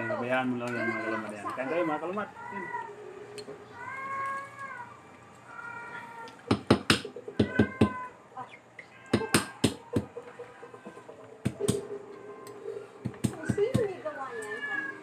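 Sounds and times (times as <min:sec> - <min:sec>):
cat meowing: 0:00.0 - 0:01.3, 0:02.3 - 0:03.0, 0:03.8 - 0:06.4, 0:07.4 - 0:08.2, 0:08.9 - 0:09.6, 0:14.3 - 0:15.0.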